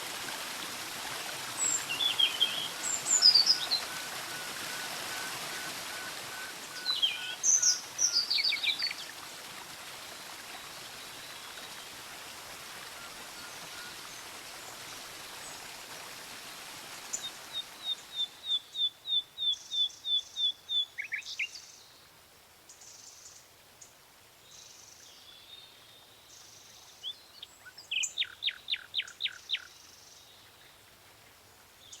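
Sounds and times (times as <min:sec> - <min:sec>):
falling water rushing: 0:00.0 - 0:18.0
small birds singing: 0:01.6 - 0:09.1.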